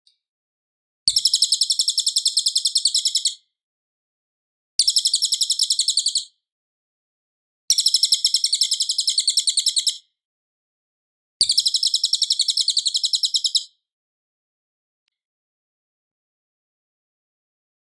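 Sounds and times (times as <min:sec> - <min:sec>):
bird chattering song: 0:01.1 - 0:03.4, 0:04.8 - 0:06.3, 0:07.7 - 0:10.1, 0:11.4 - 0:13.8.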